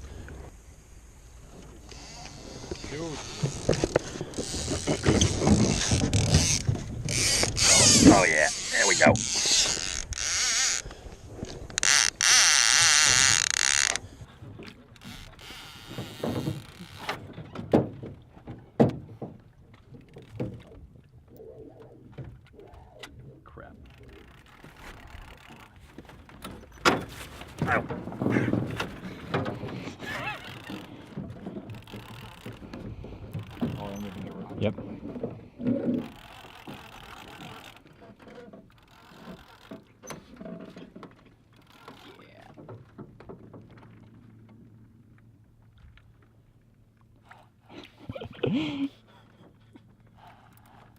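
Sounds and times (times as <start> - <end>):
fishing reel whirring: 0.2 - 14.2, 15.0 - 17.1, 23.9 - 25.7, 30.0 - 31.0, 31.7 - 32.7, 35.9 - 37.9, 38.7 - 40.2
knocks and thumps on a boat: 2.6 - 47.2
fishing reel clicks: 5.6 - 14.1.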